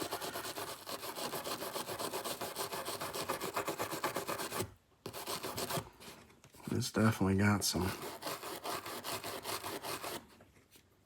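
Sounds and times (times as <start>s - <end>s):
rapid scrubbing on metal: 0.0s - 5.8s, 7.8s - 10.2s.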